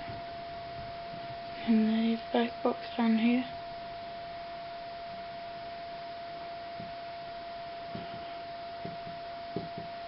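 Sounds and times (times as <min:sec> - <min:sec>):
steady high electrical whine: 0:00.0 - 0:10.0
soft low knocks: 0:07.9 - 0:10.0.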